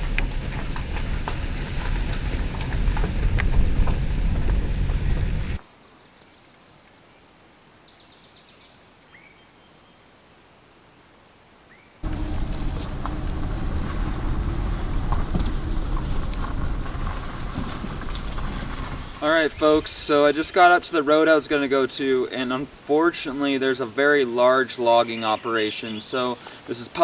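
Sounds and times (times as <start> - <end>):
vehicle driving rumble: 0.0 - 5.6, 12.0 - 20.4.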